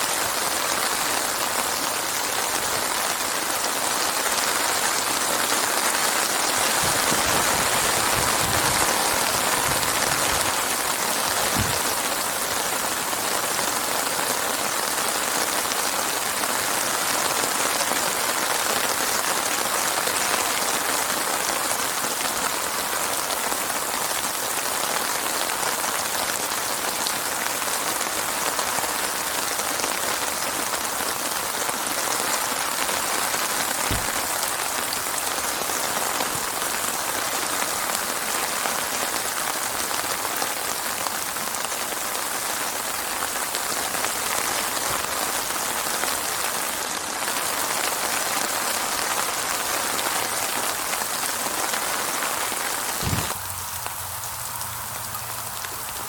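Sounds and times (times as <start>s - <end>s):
rain pattering: 0.0s - 56.0s
faint low thump: 11.5s - 11.9s, 33.9s - 34.3s, 53.0s - 53.7s.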